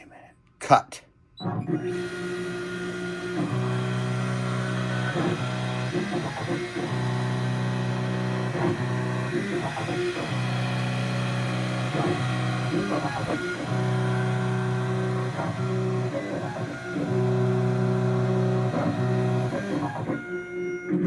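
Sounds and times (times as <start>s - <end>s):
guitar chords: 3.2s - 20.2s.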